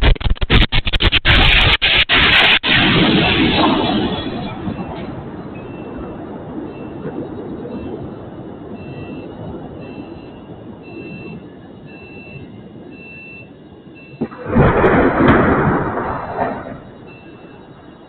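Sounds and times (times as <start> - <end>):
sharp crack: 0.0 - 5.4, 14.2 - 17.2
loud explosion blast: 1.1 - 11.4, 14.2 - 17.4
repeating high beep: 4.6 - 6.1, 6.7 - 18.0.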